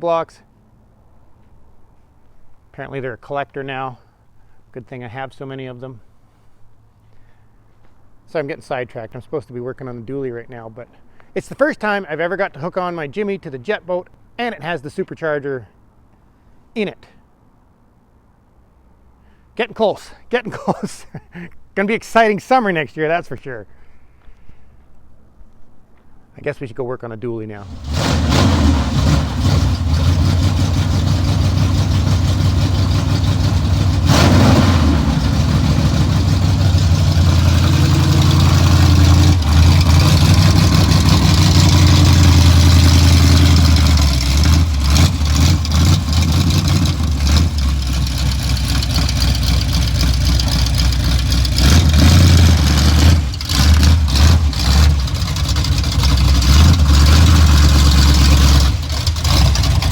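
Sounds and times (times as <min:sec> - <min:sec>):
large engine revving: 0:27.6 - 0:59.9.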